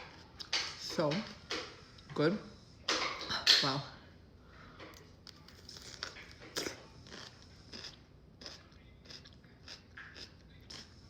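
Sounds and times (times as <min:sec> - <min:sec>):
person chewing crunchy food: 0:05.0 - 0:11.0.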